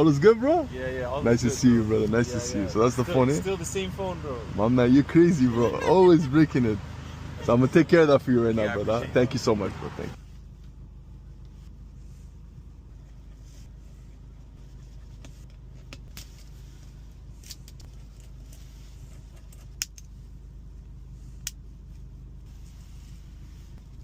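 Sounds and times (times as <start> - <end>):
vehicle engine idling: 0.0 - 24.0.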